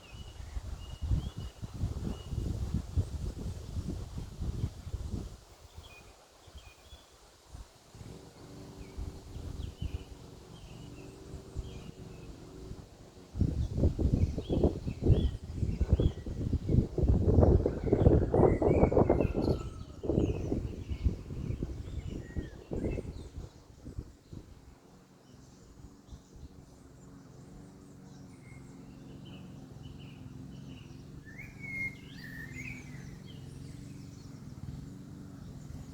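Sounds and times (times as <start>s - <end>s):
low outdoor rumble: 7.9s - 35.9s
steady low hum: 7.9s - 35.9s
faint bird chirps: 24.3s - 35.9s.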